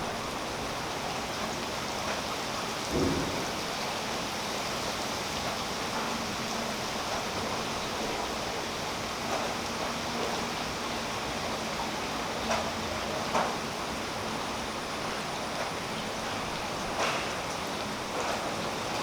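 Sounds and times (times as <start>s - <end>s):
rain falling on leaves: 0.0s - 19.0s.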